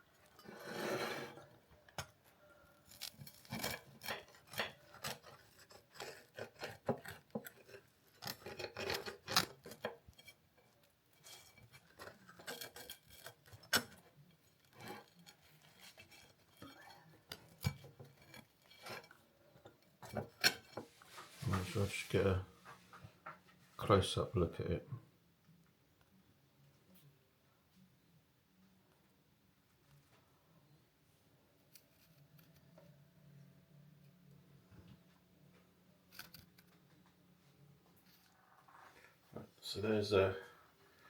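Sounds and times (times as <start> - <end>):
knife scraping through pizza crust: 0.4 - 1.4, 2.9 - 10.4.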